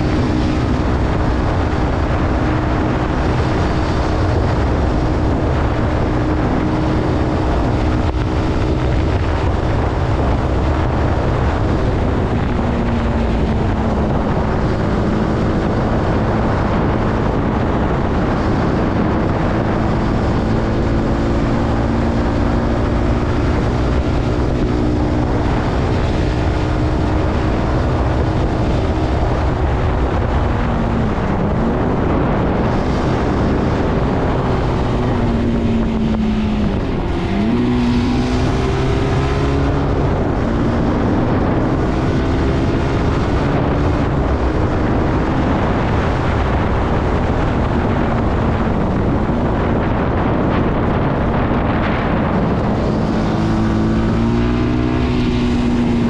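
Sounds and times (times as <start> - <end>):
motorcycle engine running: 0.0 - 56.0
wind noise on microphone: 0.0 - 56.0.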